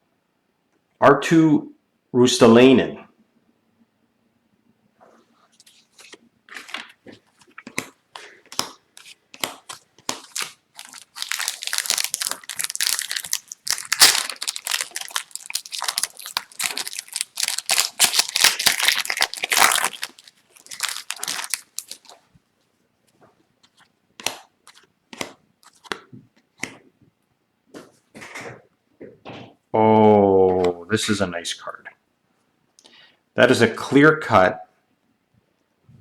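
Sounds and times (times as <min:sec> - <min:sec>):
wrapper crinkling: 0:05.6 - 0:22.3.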